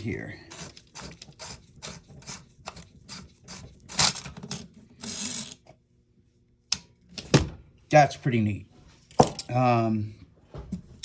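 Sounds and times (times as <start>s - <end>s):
metal parts scraping: 0.0s - 5.6s.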